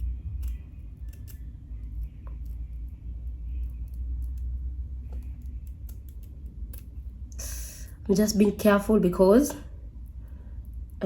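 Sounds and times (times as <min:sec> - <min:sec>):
low steady hum: 0:00.0 - 0:11.0
scissors snipping: 0:00.3 - 0:01.4, 0:05.1 - 0:06.9.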